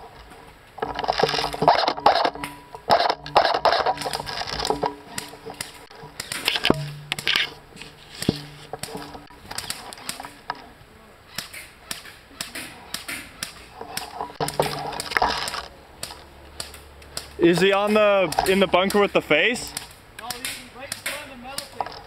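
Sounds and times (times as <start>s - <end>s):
airsoft guns firing: 11.3s - 21.8s.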